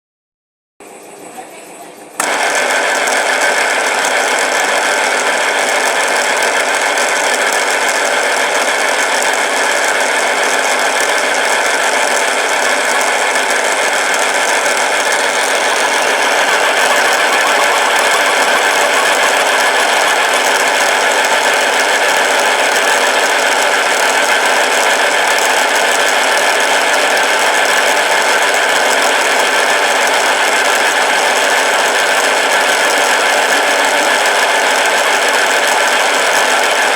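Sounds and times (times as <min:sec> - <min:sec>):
lathe motor whining: 0:02.2 - 0:36.9.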